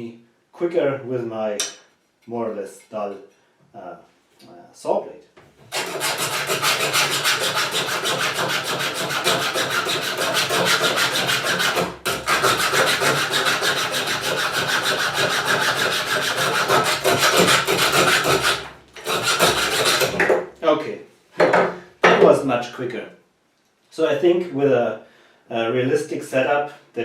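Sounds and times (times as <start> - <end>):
hacksaw rasping through wire: 5.7 - 20.4.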